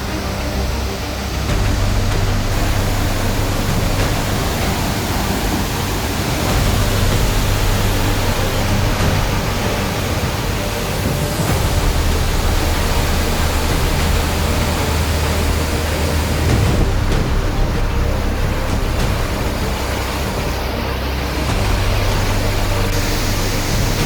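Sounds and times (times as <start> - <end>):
waterfall roaring: 0.0 - 24.0.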